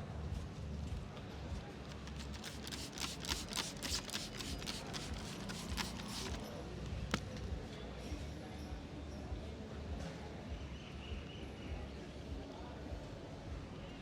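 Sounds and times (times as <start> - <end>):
hands slapping and rubbing head: 1.9 - 7.3.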